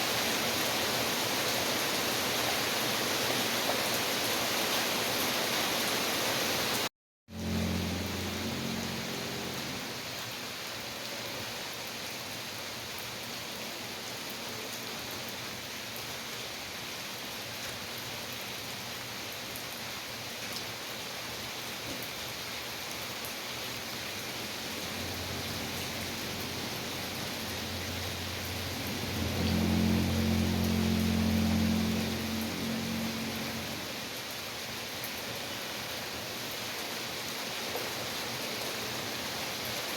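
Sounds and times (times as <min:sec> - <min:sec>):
steady rain hiss: 0:00.0 - 0:39.9
low steady hum: 0:07.3 - 0:09.9, 0:24.6 - 0:33.9.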